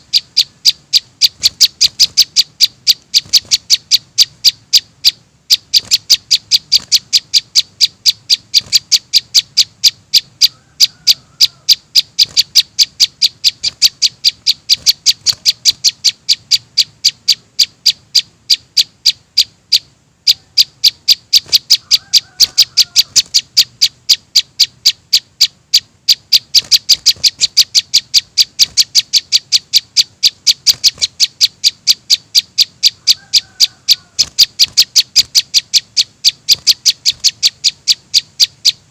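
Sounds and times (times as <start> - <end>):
fainter lower bird call: 0.0 - 38.9
juvenile bird begging chirps: 0.0 - 38.9.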